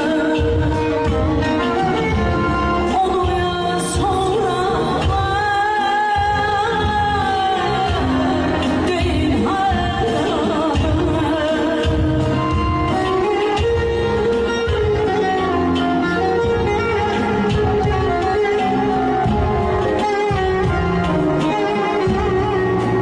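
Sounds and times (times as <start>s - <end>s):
band accompaniment: 0.0s - 23.0s
steady drum beat: 0.0s - 23.0s
woman singing with ornamental trills: 2.9s - 14.0s.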